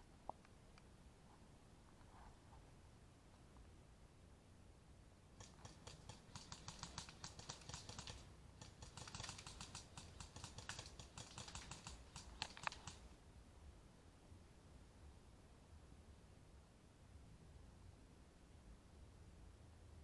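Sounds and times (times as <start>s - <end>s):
distant airsoft guns firing: 5.4s - 13.0s.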